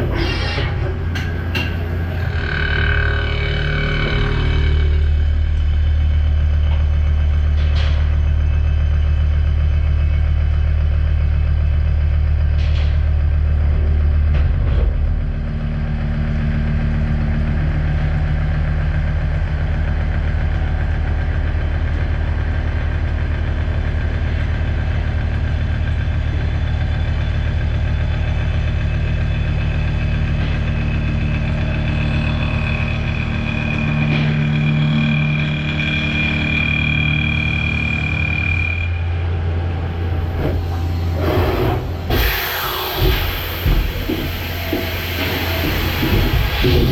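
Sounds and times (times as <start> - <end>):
high machine whine: 0.0 - 46.9
machining center milling steel: 29.5 - 46.9.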